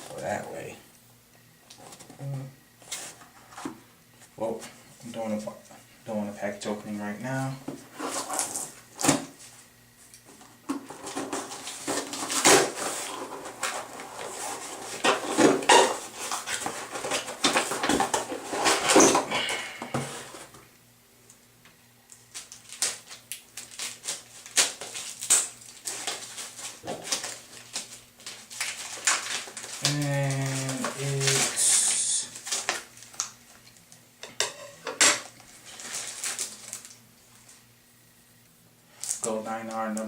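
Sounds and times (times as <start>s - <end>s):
cardboard package rustling: 10.8s - 20.6s, 22.2s - 33.8s, 35.3s - 37.7s.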